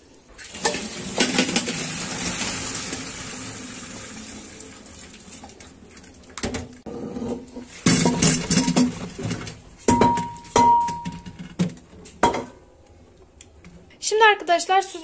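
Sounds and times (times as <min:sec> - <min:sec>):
water pouring through strainer: 0:00.4 - 0:06.4.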